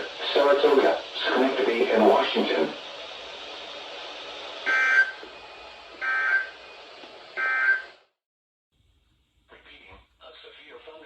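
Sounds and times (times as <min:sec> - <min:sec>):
digital data tone bursts: 0:04.7 - 0:05.2, 0:06.0 - 0:06.6, 0:07.4 - 0:07.8.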